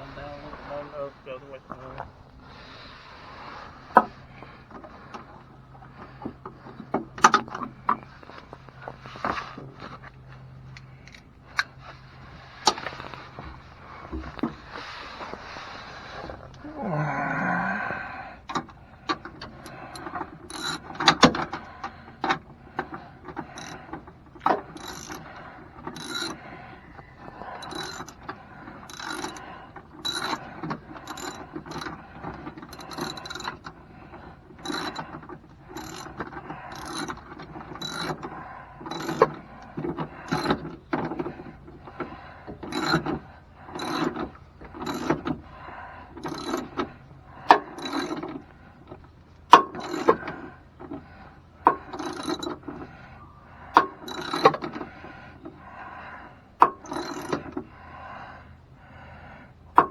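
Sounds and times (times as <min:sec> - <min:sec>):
ratchet wrench clicking: 0:19.2 - 0:26.5, 0:27.3 - 0:40.6, 0:43.8 - 0:45.2, 0:46.2 - 0:48.3, 0:51.7 - 0:52.7, 0:53.8 - 0:54.6, 0:56.6 - 0:57.5.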